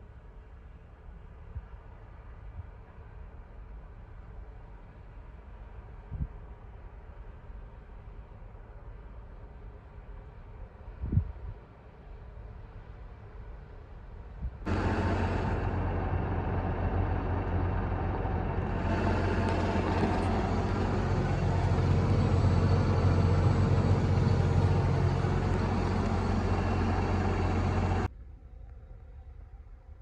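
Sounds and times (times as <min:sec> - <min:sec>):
diesel machinery droning: 0:14.7 - 0:28.1.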